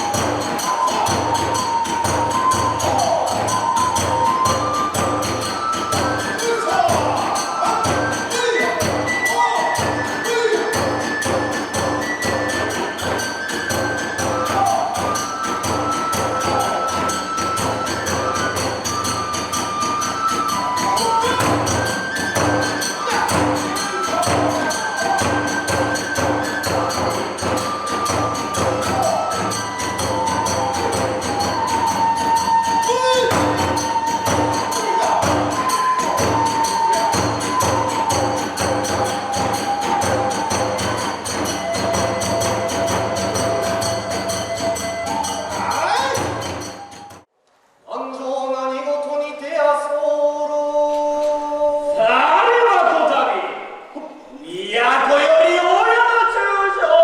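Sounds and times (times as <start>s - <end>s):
bamboo flute melody: 0.0s - 47.3s
fast steady drumbeats: 0.0s - 47.3s.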